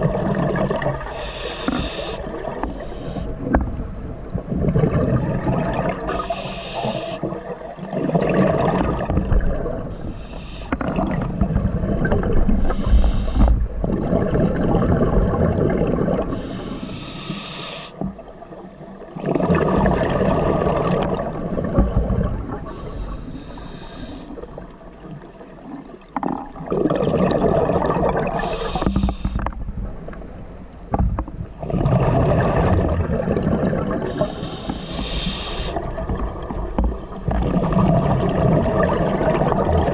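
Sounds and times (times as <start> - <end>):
gurgling exhaled bubbles: 0.0 - 16.6, 19.0 - 23.1, 25.7 - 30.1, 31.5 - 39.9
hissing regulator inhale: 1.0 - 3.5, 6.1 - 7.4, 9.9 - 10.8, 12.5 - 13.6, 16.3 - 18.0, 22.6 - 24.4, 28.4 - 29.5, 34.1 - 35.9.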